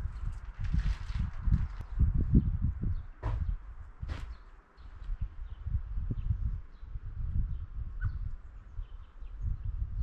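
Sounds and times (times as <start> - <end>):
low knocks and rumbling: 3.2 - 4.4.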